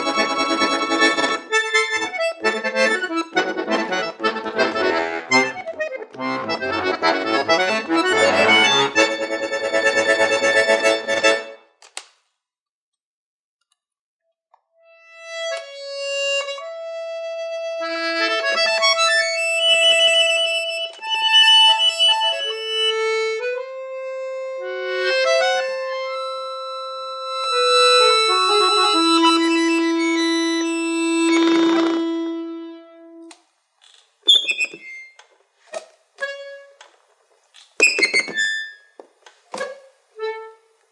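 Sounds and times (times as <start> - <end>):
accordion playing: 0.0 - 11.6, 15.1 - 33.2, 36.2 - 36.8, 40.2 - 40.8.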